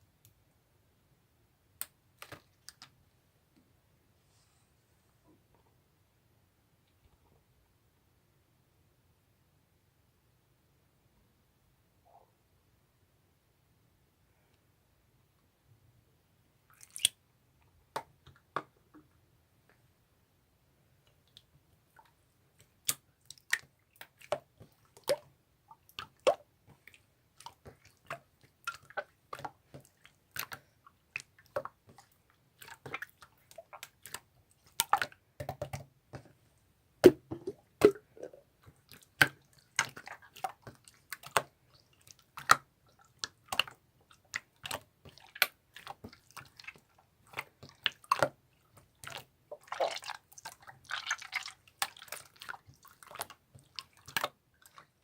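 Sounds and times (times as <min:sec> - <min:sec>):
slime clicking and squishing: 0:22.6 - 0:35.9, 0:38.6 - 0:55.0.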